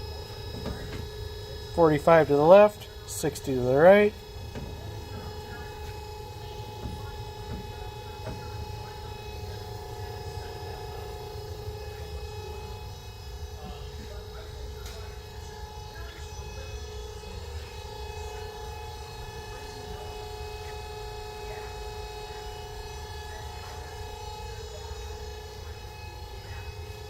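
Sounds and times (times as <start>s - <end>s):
bandsaw humming and whining: 0.0s - 27.0s.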